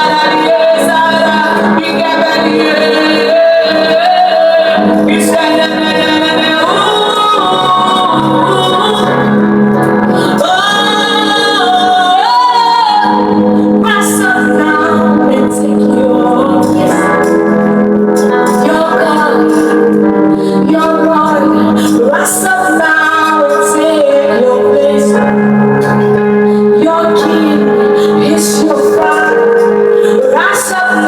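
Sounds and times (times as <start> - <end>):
sustained instrumental chords: 0.0 - 31.0
woman singing: 0.0 - 31.0.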